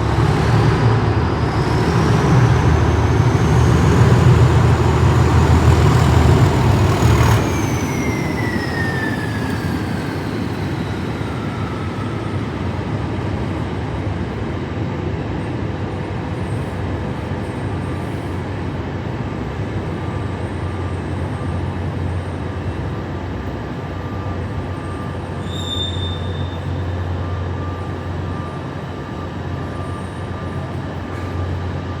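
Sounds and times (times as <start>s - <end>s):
diesel locomotive pulling away: 0.0s - 32.0s
turbocharger whistle: 1.5s - 12.2s, 25.4s - 27.7s.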